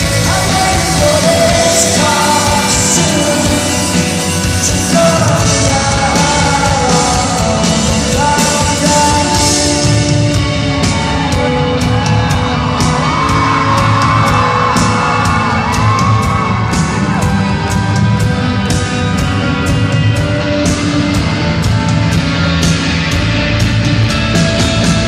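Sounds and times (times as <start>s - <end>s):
person singing: 0.0s - 12.5s
live rock band playing: 0.0s - 25.0s.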